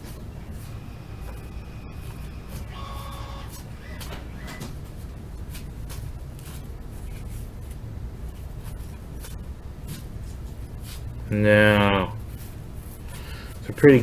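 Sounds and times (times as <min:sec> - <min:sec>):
low steady hum: 0:00.0 - 0:14.0
cards rustling and clicking: 0:04.7 - 0:11.1.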